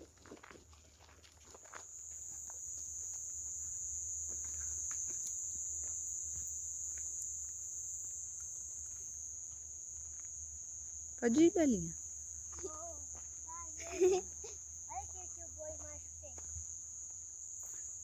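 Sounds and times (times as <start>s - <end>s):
faint ticks: 1.0s - 10.6s
high-pitched insect chorus: 1.5s - 18.0s.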